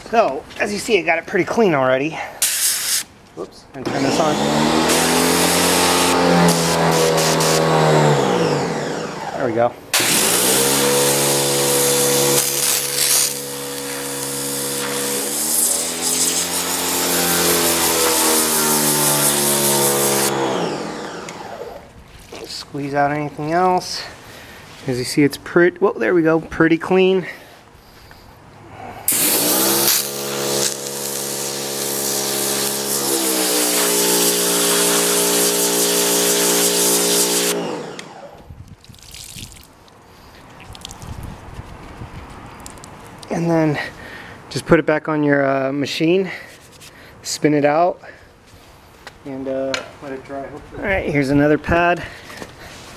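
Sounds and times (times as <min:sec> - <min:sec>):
pressure washer pump drone: 0:03.8 - 0:21.9, 0:29.1 - 0:38.5
water jet spraying: 0:10.0 - 0:20.4, 0:29.1 - 0:37.6
water jet hissing: 0:29.1 - 0:37.6
water dripping: 0:38.8 - 0:39.7.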